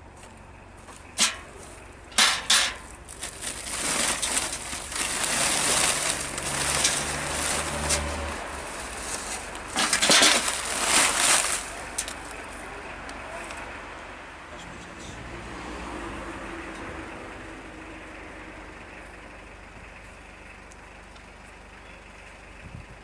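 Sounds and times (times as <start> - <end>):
hard objects scraping and crackling: 0.8 - 12.7.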